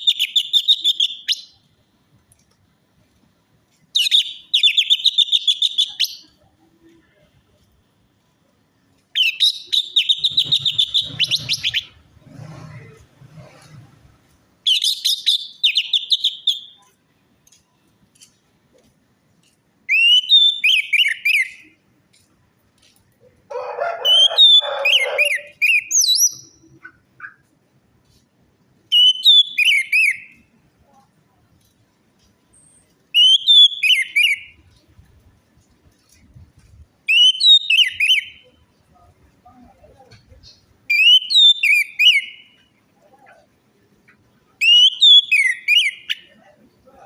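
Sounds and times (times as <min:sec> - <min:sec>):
thrush whistled song: 0:00.0 - 0:01.6, 0:09.2 - 0:12.0, 0:14.7 - 0:16.8, 0:19.9 - 0:21.7, 0:28.9 - 0:30.4, 0:32.6 - 0:34.6, 0:37.1 - 0:38.5, 0:40.9 - 0:42.6, 0:44.6 - 0:46.2
low rough sound: 0:11.5 - 0:14.4.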